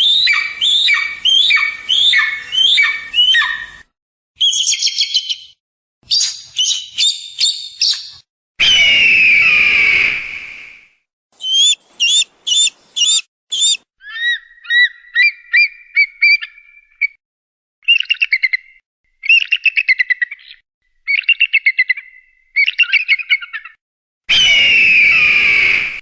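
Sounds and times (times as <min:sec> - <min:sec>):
eagle calling: 0:00.0 - 0:03.8, 0:11.4 - 0:16.7.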